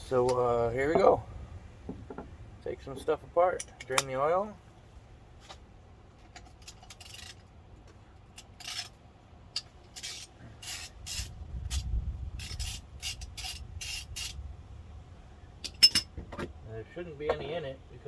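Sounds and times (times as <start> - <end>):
hand ratchet rasping: 8.3 - 9.0, 9.6 - 14.4.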